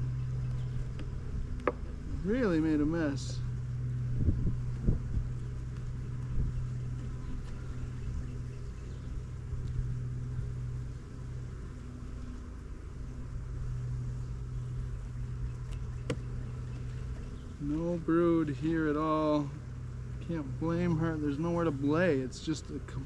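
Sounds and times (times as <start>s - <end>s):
honeybees buzzing: 0.0s - 23.0s
light knocks on hive frames: 16.0s - 17.2s.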